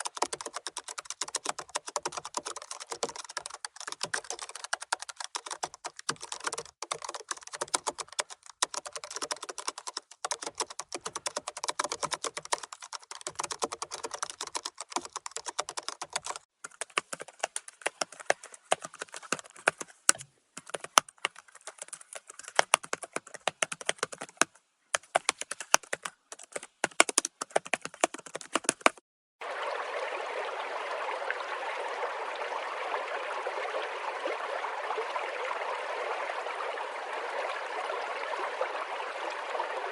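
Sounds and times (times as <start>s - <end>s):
typing on computer keyboard: 0.0s - 29.0s
running water: 27.5s - 39.9s.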